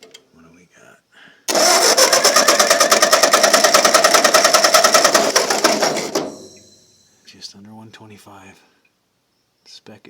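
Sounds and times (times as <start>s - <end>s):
tractor engine cranked by starter: 1.5s - 6.9s.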